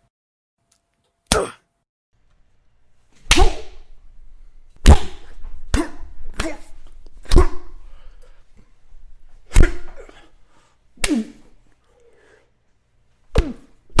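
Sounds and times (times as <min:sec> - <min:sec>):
punches and slaps: 0:01.3 - 0:01.6, 0:03.2 - 0:03.9, 0:04.8 - 0:07.8, 0:09.5 - 0:10.2, 0:11.0 - 0:11.5, 0:13.3 - 0:14.0.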